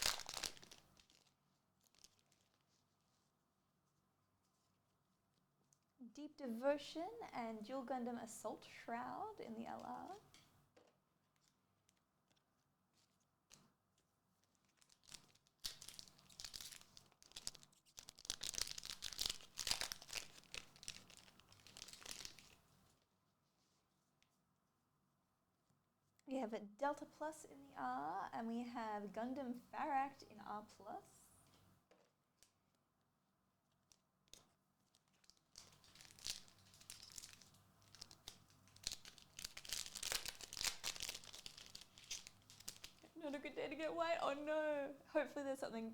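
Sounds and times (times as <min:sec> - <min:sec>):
wrapper tearing and crinkling: 0:00.0 - 0:02.9, 0:14.4 - 0:22.6, 0:34.3 - 0:43.2.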